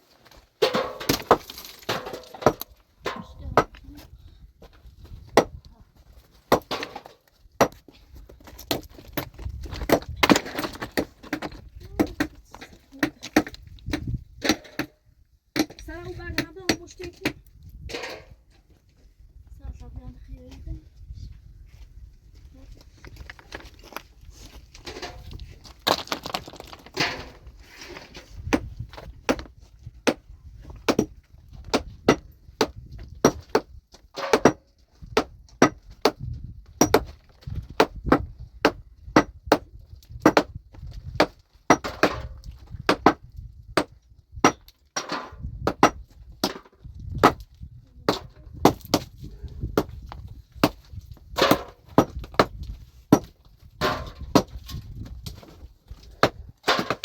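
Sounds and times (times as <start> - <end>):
pickaxe striking rock: 0.6 - 3.7, 5.3 - 5.6, 6.5 - 7.8, 13.0 - 14.9, 30.9 - 34.6, 35.2 - 37.1, 37.8 - 47.4, 48.1 - 49.2, 50.6 - 54.7, 56.2 - 57.0.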